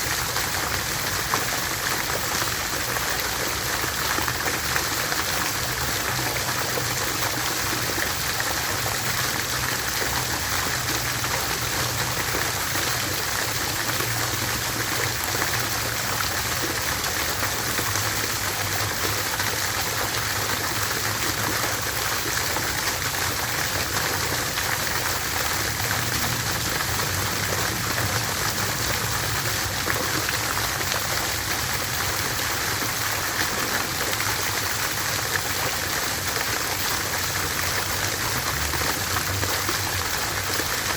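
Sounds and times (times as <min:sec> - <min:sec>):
water fountain splashing: 0:00.0 - 0:40.9.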